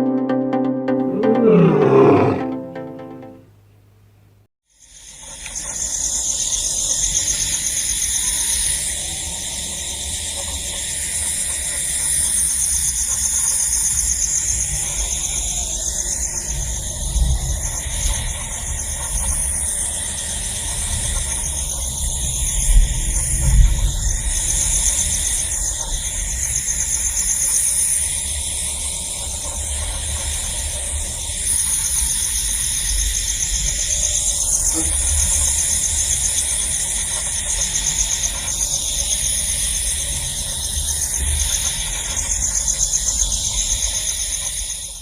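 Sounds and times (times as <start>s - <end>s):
short musical phrase: 0.0s - 3.4s.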